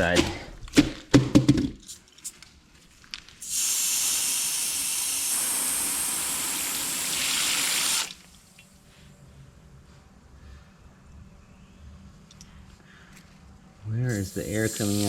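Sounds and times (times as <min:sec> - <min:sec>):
water spray hissing: 0:03.4 - 0:08.3, 0:14.1 - 0:15.0.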